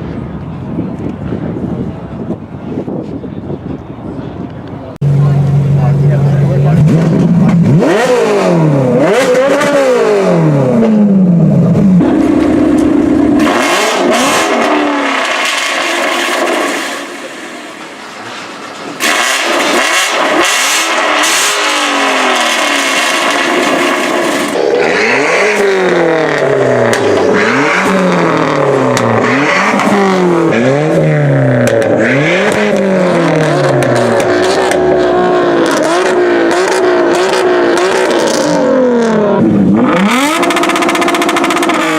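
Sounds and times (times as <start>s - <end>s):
car engines revving: 0.0s - 41.9s
engine rev blips: 19.0s - 41.9s.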